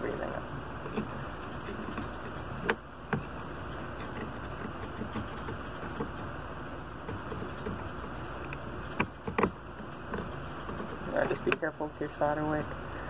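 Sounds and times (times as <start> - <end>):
tools clicking on workbench: 6.9 - 11.7.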